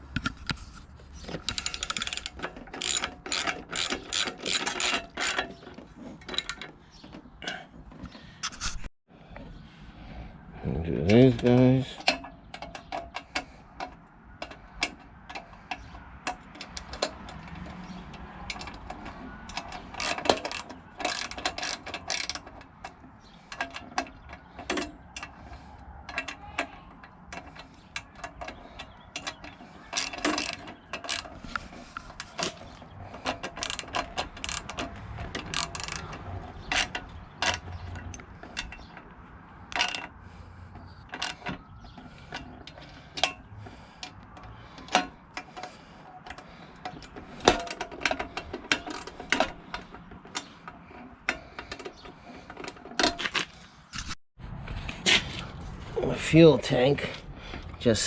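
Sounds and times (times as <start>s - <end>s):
ratchet wrench clicking: 1.5s - 5.5s, 19.5s - 22.5s, 29.9s - 31.3s, 33.2s - 38.7s.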